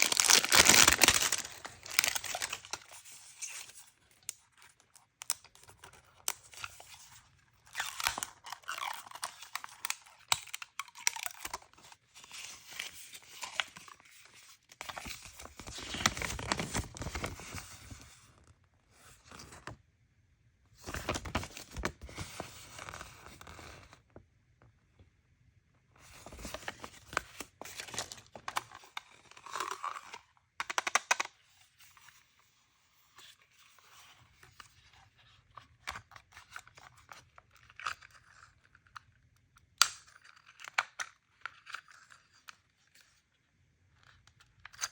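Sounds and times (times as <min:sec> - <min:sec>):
packaging crinkling and tearing: 0:00.0 - 0:18.0, 0:26.1 - 0:31.3.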